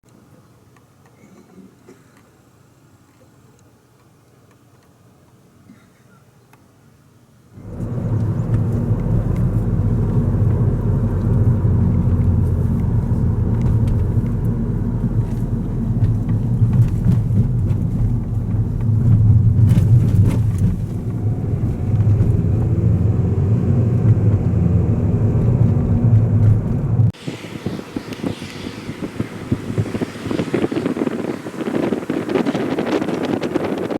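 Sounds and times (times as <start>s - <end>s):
vehicle rumble: 7.6s - 33.9s.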